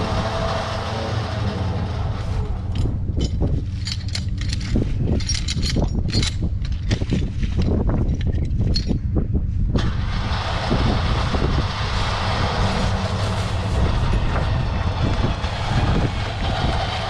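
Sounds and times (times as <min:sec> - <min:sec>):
engine running: 0:00.0 - 0:08.4, 0:09.6 - 0:17.0
metallic clanks and rattles: 0:00.0 - 0:09.3.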